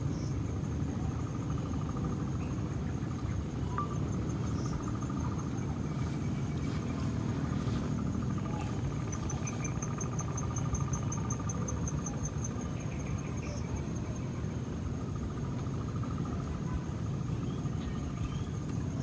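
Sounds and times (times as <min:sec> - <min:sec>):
high insect trill: 0:00.0 - 0:19.0
low insect trill: 0:00.0 - 0:19.0
steady low rumble: 0:00.6 - 0:10.9.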